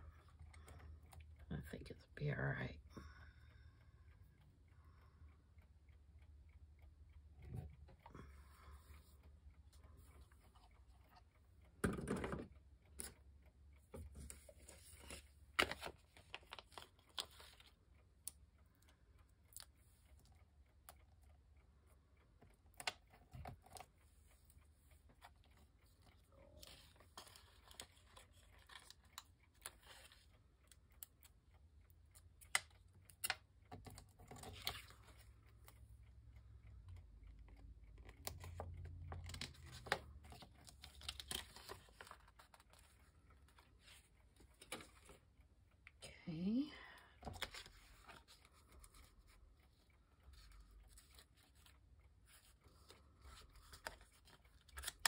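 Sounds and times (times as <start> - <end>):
paper rustling: 14.0 - 17.7, 39.2 - 45.2.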